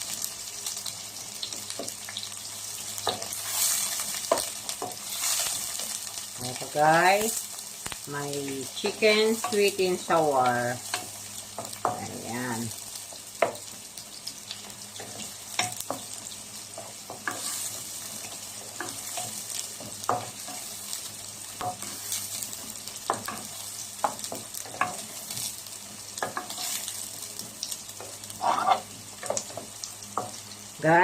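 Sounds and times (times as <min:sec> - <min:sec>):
onion sizzling in hot oil: 0:00.0 - 0:31.0
utensil scraping a pan: 0:16.8 - 0:17.9, 0:28.3 - 0:29.5.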